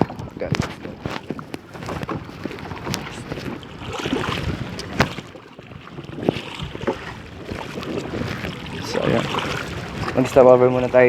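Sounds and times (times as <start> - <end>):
paddle strokes splashing water: 0.0 - 11.0
wind on microphone: 0.0 - 11.0.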